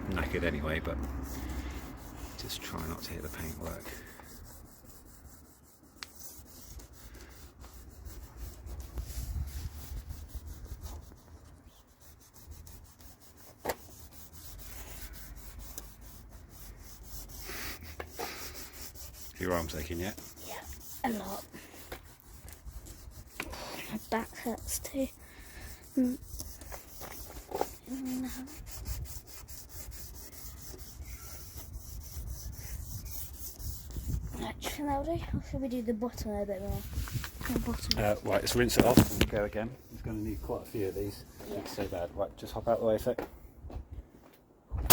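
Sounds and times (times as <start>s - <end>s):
sandpaper scraping plastic: 0.1s - 34.9s, 36.2s - 42.1s.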